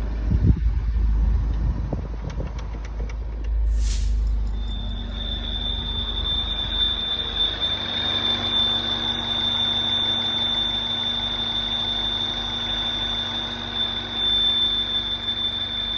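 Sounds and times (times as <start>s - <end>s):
car engine running: 0.0s - 15.9s
high-pitched engine whine: 0.0s - 15.9s.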